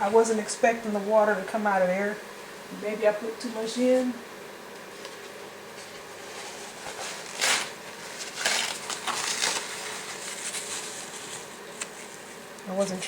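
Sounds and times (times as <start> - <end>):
rustling crinkling handling noises: 4.8 - 13.0.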